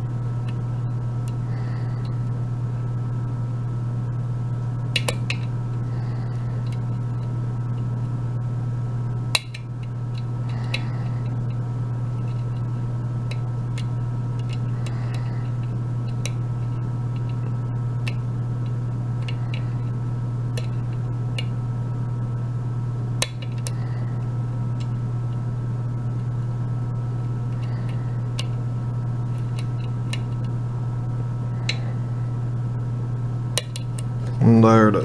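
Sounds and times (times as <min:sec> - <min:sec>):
steady low hum: 0:00.0 - 0:35.0
lock pick clicking metallically: 0:04.9 - 0:05.5, 0:09.3 - 0:11.6, 0:20.5 - 0:21.5, 0:23.2 - 0:23.8, 0:33.6 - 0:34.1.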